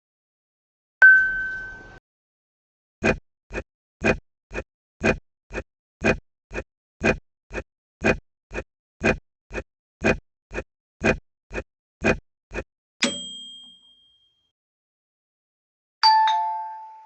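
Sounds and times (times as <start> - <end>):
microwave oven bell ding: 1.0 - 2.0, 13.0 - 14.5, 16.0 - 17.0.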